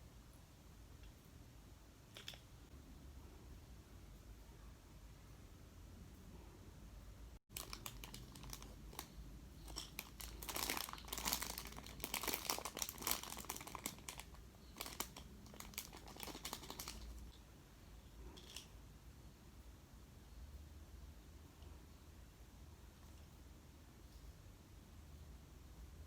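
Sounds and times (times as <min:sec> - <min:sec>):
plastic crinkling with clicks: 0:07.5 - 0:17.4.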